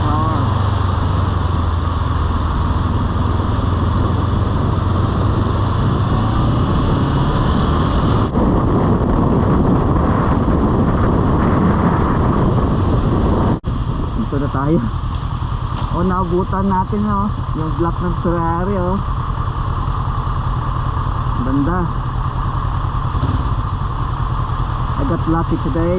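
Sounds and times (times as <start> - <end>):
wind noise on microphone: 0.0 - 17.9
motorcycle engine: 0.0 - 25.9.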